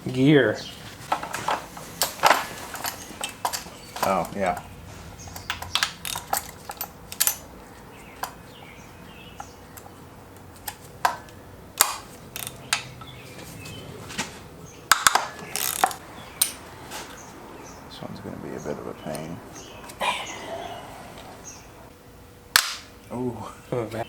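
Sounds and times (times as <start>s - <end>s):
hand tools clinking on metal: 1.1s - 4.7s, 5.3s - 7.5s, 14.9s - 16.6s.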